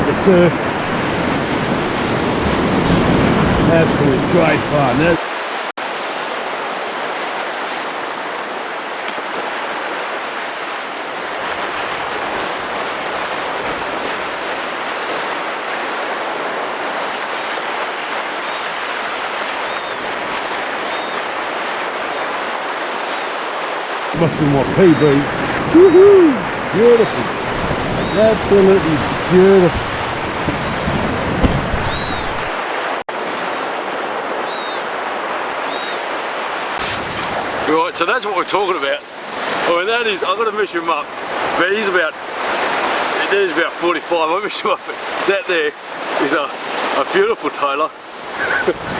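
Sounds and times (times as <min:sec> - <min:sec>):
wind on microphone: 0:00.0 - 0:05.2, 0:24.1 - 0:36.0, 0:48.1 - 0:48.9
ocean surf breaking on beach: 0:00.0 - 0:48.9.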